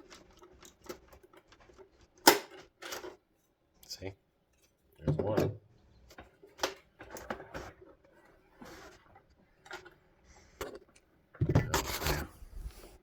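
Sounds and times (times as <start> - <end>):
plastic parts clattering: 0.0 - 3.2.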